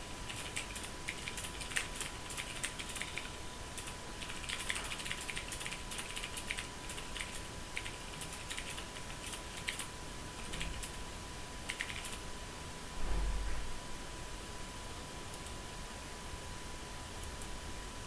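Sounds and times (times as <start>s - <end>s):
mechanical keyboard typing: 0.3s - 11.0s, 11.7s - 12.2s.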